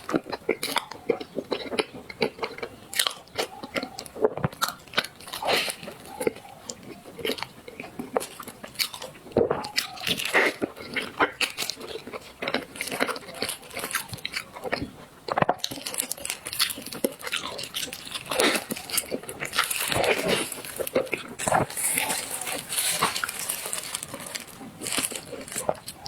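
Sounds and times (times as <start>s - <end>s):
crisp crunches: 0.0s - 14.9s, 15.5s - 26.0s
person chewing food: 0.0s - 26.0s
mouth smacks: 12.1s - 26.0s.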